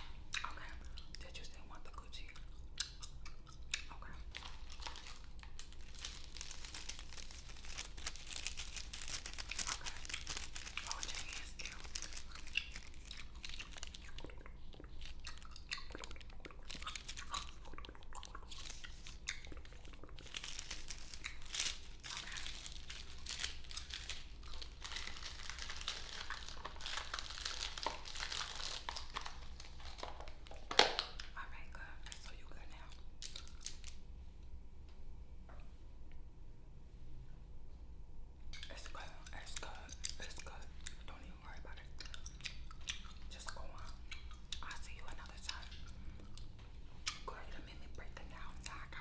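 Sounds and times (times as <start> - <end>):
small clicks and crinkles: 2.2 - 31.4, 32.0 - 34.0, 42.0 - 48.9.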